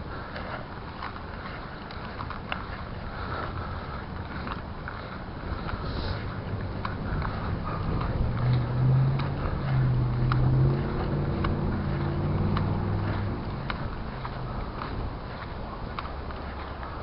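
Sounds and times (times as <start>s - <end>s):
light regular ticks: 0.1s - 17.0s
motor engine running: 1.4s - 17.0s.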